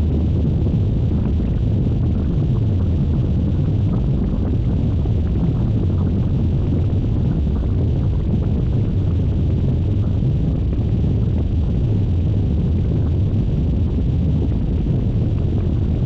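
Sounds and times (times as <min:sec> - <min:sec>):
dense low rumble: 0:00.0 - 0:16.0.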